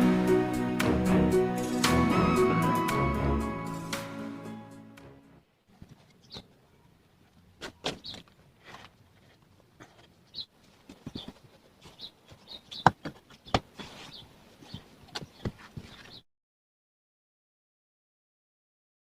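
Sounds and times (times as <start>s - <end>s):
small birds chirping: 6.1s - 7.0s, 8.0s - 8.3s, 10.1s - 16.2s.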